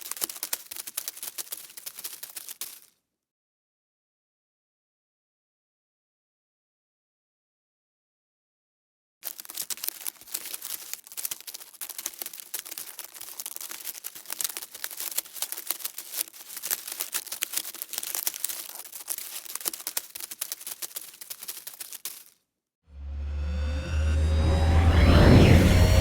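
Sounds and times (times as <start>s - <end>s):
dense crackling of small clicks: 0.0s - 2.8s, 9.2s - 22.3s.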